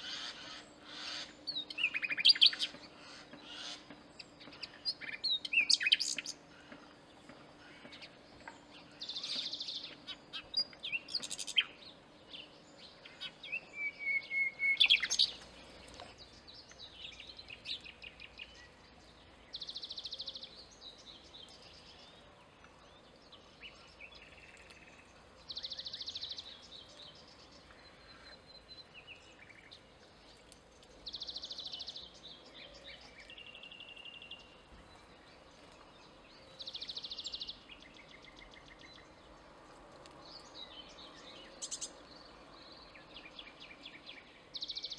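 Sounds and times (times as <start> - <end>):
nightingale singing: 0.0 - 6.4, 7.8 - 30.2, 40.3 - 44.9.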